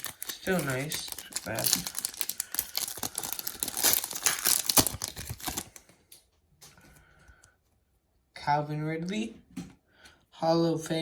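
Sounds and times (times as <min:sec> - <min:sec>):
foil wrapper crinkling and tearing: 0:00.0 - 0:05.9.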